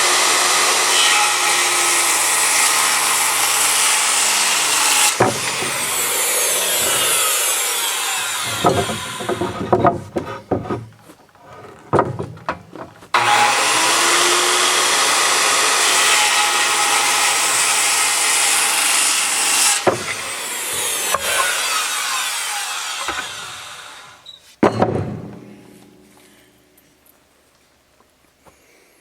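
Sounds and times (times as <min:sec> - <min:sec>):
saw blade winding down: 0:00.0 - 0:09.2
power saw cutting wood: 0:00.0 - 0:10.6, 0:13.1 - 0:24.2
knocks of handling wood: 0:05.0 - 0:06.0, 0:08.4 - 0:13.2, 0:24.5 - 0:26.6.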